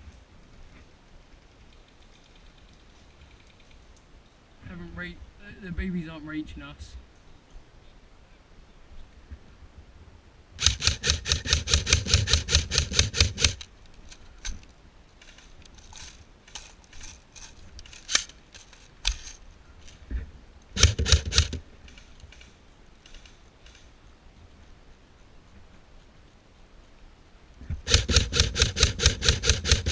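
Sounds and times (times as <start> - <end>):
airsoft gun firing: 10.6 - 13.6, 20.8 - 21.6, 27.8 - 29.9.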